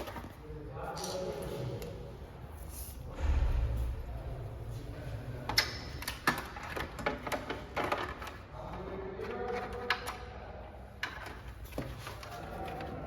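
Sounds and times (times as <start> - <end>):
plastic and metal parts clicking: 5.5 - 10.3, 11.0 - 12.9.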